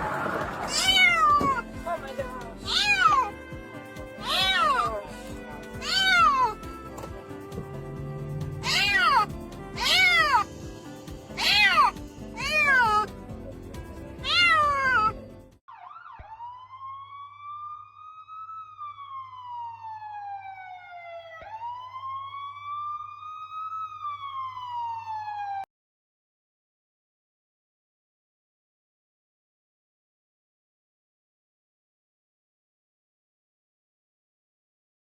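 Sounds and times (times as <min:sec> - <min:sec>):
police siren wailing: 0:00.0 - 0:03.5, 0:04.2 - 0:10.5, 0:15.7 - 0:25.7
background music: 0:00.0 - 0:15.6
cat meowing: 0:00.6 - 0:01.8, 0:02.6 - 0:03.4, 0:04.2 - 0:07.1, 0:08.6 - 0:10.5, 0:11.4 - 0:13.1, 0:14.2 - 0:15.2.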